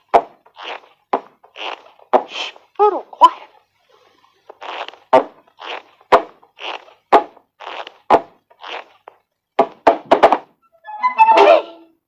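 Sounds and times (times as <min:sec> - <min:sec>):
sharp knock: 0:09.6 - 0:10.5.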